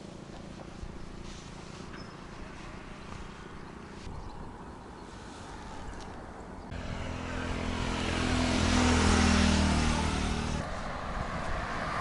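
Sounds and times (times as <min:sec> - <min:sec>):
vehicle passing by: 0:05.1 - 0:12.0.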